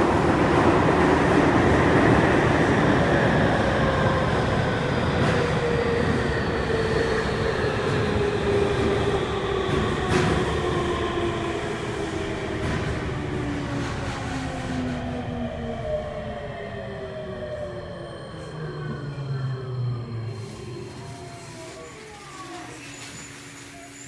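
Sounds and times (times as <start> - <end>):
train wheels rumbling on track: 0.0 - 16.0.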